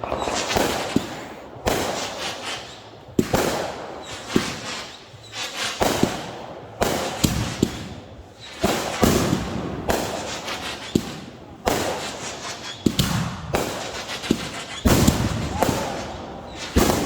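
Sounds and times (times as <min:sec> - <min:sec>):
firework bangs: 0:00.0 - 0:17.0
firework crackle and hiss: 0:00.0 - 0:17.0.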